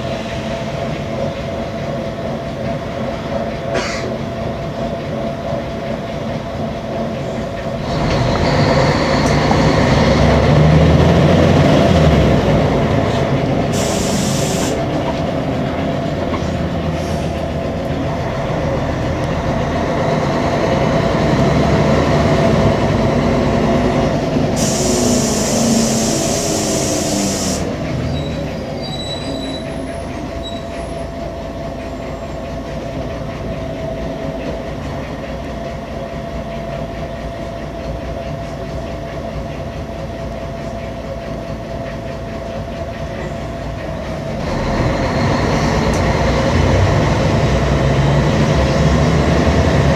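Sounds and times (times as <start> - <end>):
bus engine whine: 0.0 - 49.9
high hiss bursts: 13.7 - 14.8, 24.6 - 27.7.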